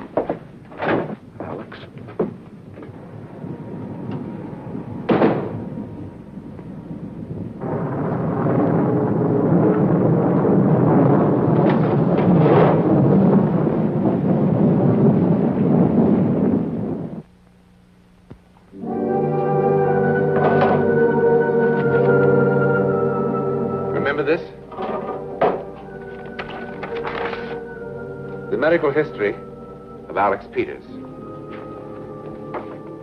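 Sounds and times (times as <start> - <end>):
rumble of thunder: 0.0 - 17.3
thunder crack: 0.0 - 17.3, 20.0 - 33.0.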